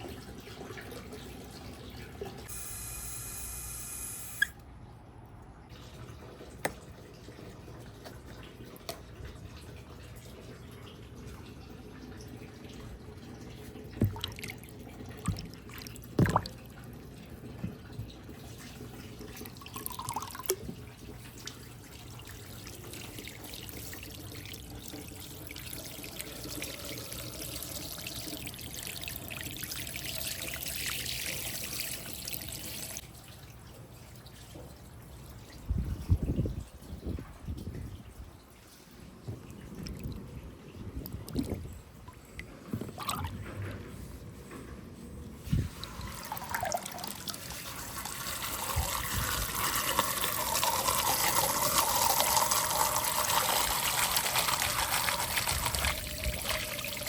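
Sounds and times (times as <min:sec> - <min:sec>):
water trickling and dripping: 0:00.0 - 0:02.5, 0:05.0 - 0:57.0.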